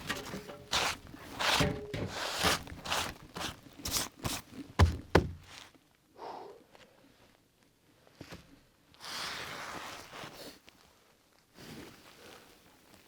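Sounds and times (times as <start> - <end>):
footsteps: 0.0 - 5.8
heavy thuds: 4.8 - 5.6.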